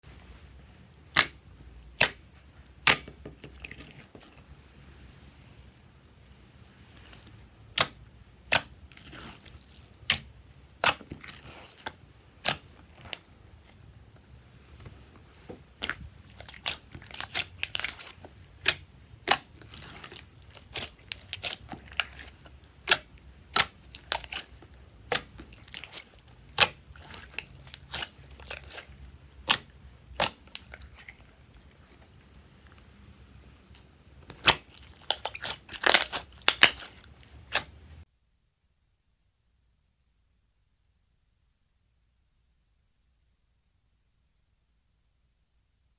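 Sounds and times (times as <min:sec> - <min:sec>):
slime snapping and crackling: 0:01.2 - 0:01.4, 0:02.0 - 0:02.2, 0:07.8 - 0:13.2, 0:15.8 - 0:31.2, 0:34.3 - 0:37.8.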